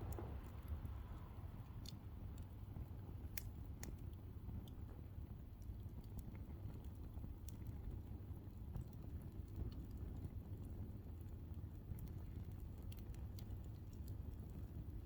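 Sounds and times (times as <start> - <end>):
low rumble: 0.0 - 1.5
campfire crackling: 0.0 - 15.0.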